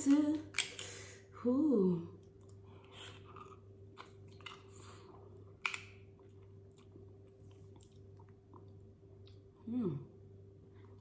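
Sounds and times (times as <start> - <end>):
faint steady hum: 0.0 - 11.0
person chewing: 2.2 - 9.5.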